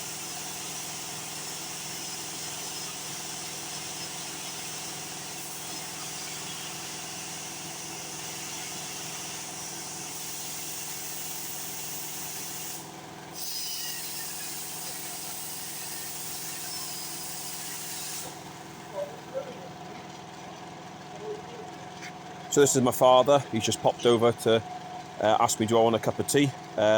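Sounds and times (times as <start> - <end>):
machine hiss: 0.0 - 19.0.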